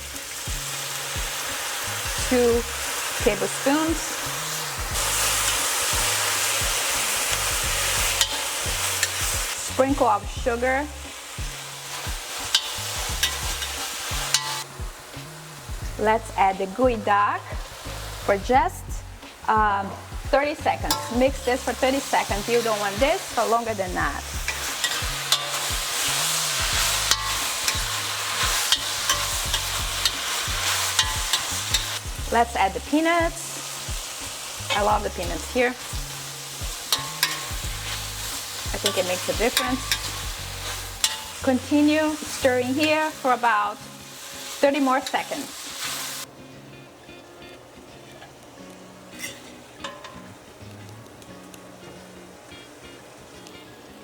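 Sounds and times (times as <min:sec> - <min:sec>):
sizzling in hot oil: 0:00.0 - 0:46.4, 0:47.0 - 0:54.0
utensil clicking against pot: 0:36.9 - 0:40.4.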